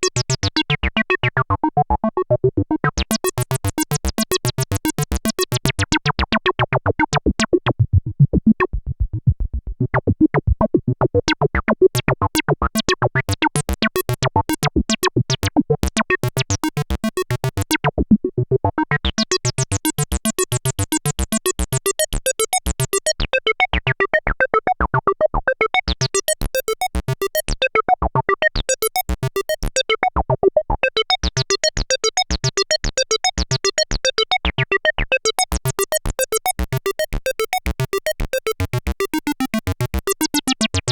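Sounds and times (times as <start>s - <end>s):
synthesizer acid bassline: 35.5s - 40.9s.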